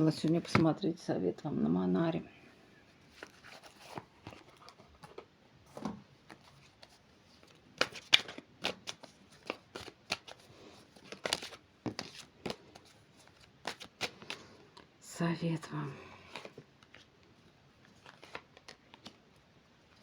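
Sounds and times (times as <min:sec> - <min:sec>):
cards being shuffled: 0:06.3 - 0:14.9, 0:17.8 - 0:19.2.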